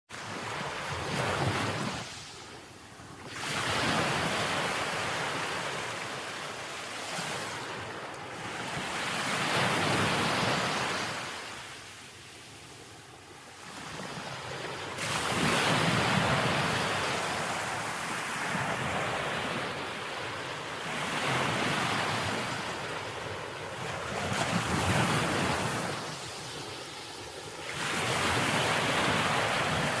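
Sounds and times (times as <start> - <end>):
sea waves breaking on shore: 0.1 - 30.0.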